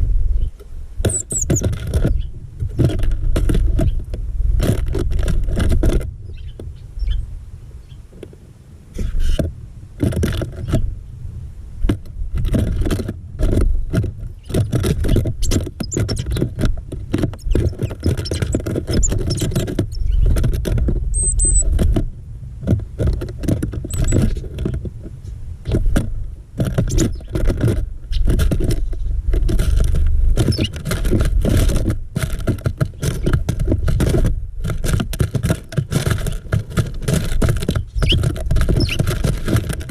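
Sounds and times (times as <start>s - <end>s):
birds pecking at feeder: 0.4s - 7.2s, 11.8s - 39.9s
high bird chirps: 1.1s - 2.3s.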